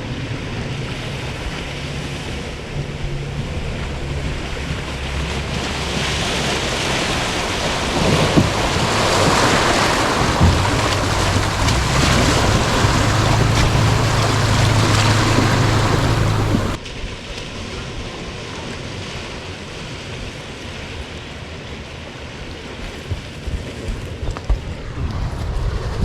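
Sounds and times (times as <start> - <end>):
water rushing around vehicle: 0.0 - 26.0
vehicle engine running: 2.4 - 16.8
light knocks: 8.1 - 16.8.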